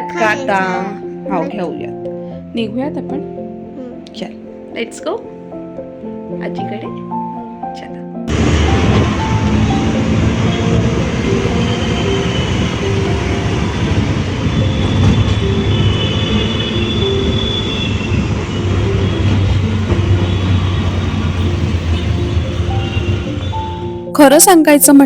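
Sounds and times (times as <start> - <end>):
wheels squealing: 8.3 - 24.0
train rumbling on rails: 8.3 - 24.1.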